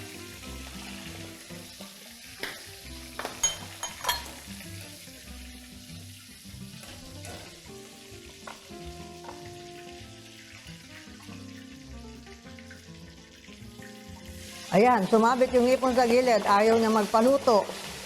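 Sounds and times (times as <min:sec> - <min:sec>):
shrimps sizzling in hot oil: 0:00.0 - 0:18.0
utensil clinking against pan: 0:03.2 - 0:04.5.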